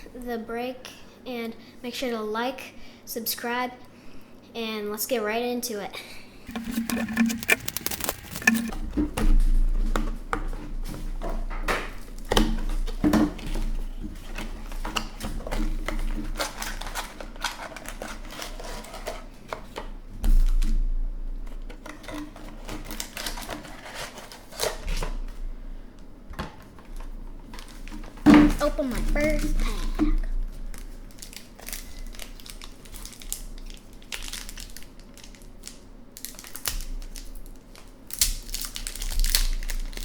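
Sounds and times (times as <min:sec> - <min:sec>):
box and wrapping torn open: 0:06.5 - 0:08.7, 0:15.6 - 0:19.2, 0:21.8 - 0:25.1, 0:31.1 - 0:37.3, 0:38.1 - 0:40.0.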